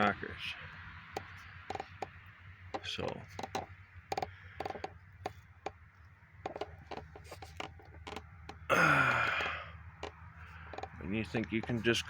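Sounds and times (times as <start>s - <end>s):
metal parts clicking and tapping: 6.5s - 8.7s, 9.3s - 11.9s.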